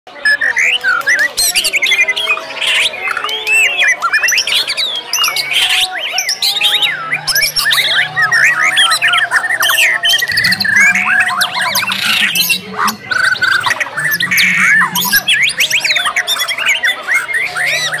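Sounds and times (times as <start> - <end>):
birds singing in dense chorus: 0.1 - 18.0.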